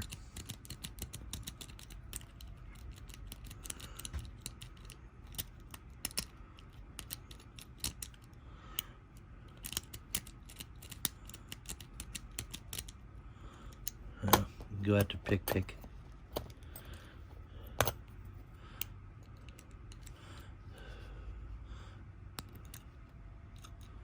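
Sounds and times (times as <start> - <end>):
lock pick clicking in lock: 0.0 - 8.9, 9.5 - 13.0, 13.7 - 17.0, 17.8 - 18.1, 22.4 - 22.9.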